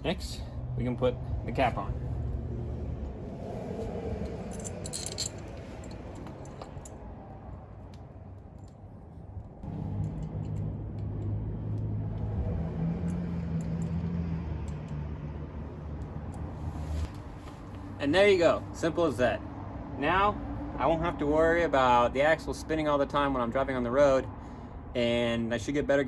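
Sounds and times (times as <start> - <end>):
metal parts clinking: 4.2 - 7.0.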